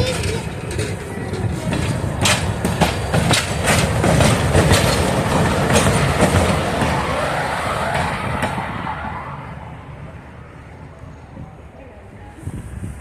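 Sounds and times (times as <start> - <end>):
wheels clicking over rail joints: 0.0 - 8.8
train rumbling past: 0.0 - 13.0.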